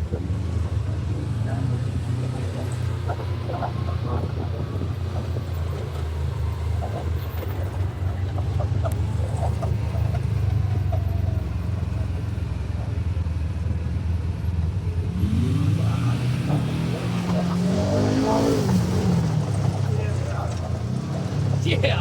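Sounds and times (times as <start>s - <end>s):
vehicle engine running: 0.0s - 22.0s.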